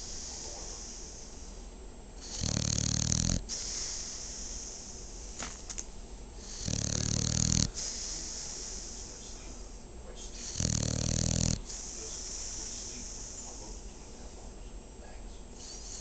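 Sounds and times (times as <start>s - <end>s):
breathy hiss: 0.0s - 16.0s
dog snoring: 2.2s - 4.7s, 6.4s - 9.3s, 10.3s - 13.8s.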